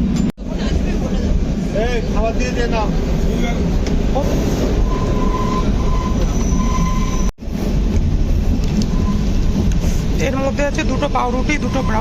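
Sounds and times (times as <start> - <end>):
train coach rumble and rattle: 0.0 - 12.0
high wheel squeal: 4.2 - 7.3, 8.7 - 10.1, 11.5 - 12.0.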